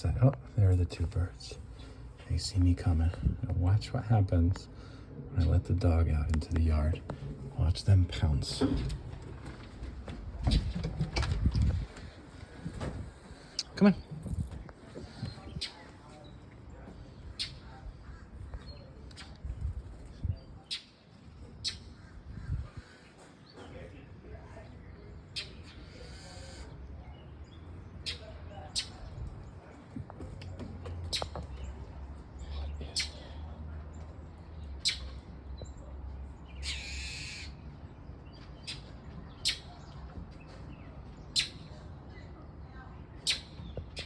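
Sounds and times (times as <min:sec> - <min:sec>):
harsh bird calls: 0:15.0 - 0:24.2, 0:25.0 - 0:29.6, 0:31.0 - 0:44.0
harsh rasping bird call: 0:25.6 - 0:26.8, 0:36.6 - 0:37.6.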